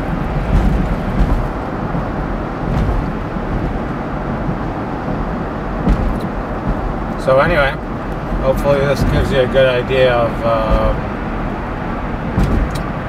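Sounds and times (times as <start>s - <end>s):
car road and engine rumble: 0.0s - 13.0s
heater fan running: 0.0s - 13.0s.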